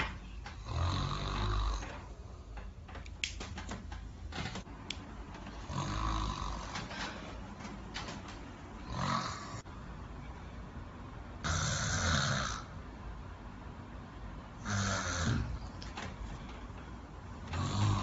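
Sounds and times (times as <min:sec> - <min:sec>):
man snoring: 0:00.6 - 0:02.0, 0:05.7 - 0:06.9, 0:08.8 - 0:09.6, 0:11.4 - 0:12.7, 0:14.6 - 0:15.6, 0:17.5 - 0:18.0.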